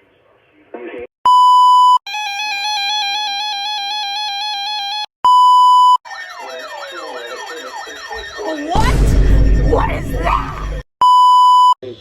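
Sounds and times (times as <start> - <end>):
loud steady beep: 5.3 - 11.8
wailing siren tones: 6.0 - 10.8
warbling alert tone: 6.1 - 10.8.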